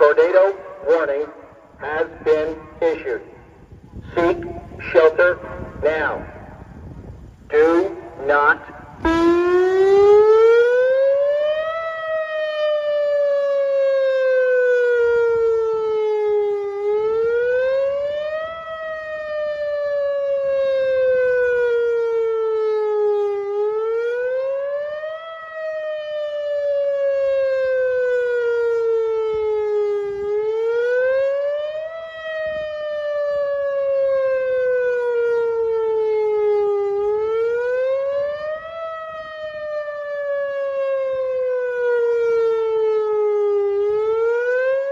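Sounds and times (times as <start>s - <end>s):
wailing warning siren: 0.0s - 44.9s.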